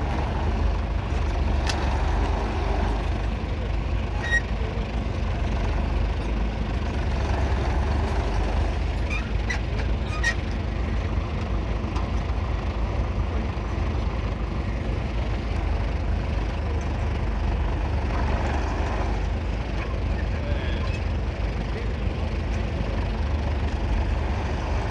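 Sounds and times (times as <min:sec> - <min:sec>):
diesel engine running: 0:00.0 - 0:24.9.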